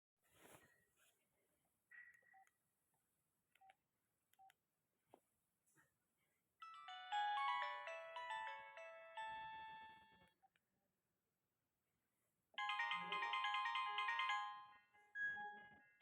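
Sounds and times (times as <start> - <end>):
phone ringtone melody: 6.6 - 10.2, 12.6 - 16.0.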